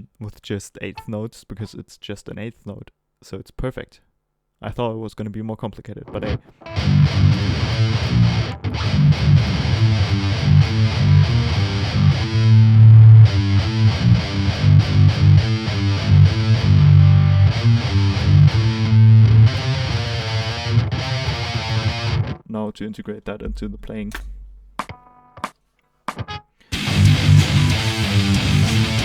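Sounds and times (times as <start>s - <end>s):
distorted electric guitar riff: 6.2s - 22.4s, 26.1s - 29.0s.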